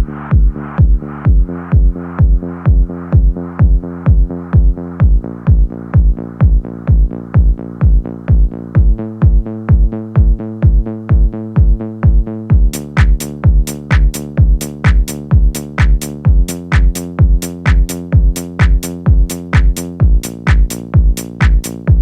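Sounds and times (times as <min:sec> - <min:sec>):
kick drum: 0:00.0 - 0:22.0
synth chords: 0:00.0 - 0:22.0
sharp hi-hats: 0:12.7 - 0:21.9.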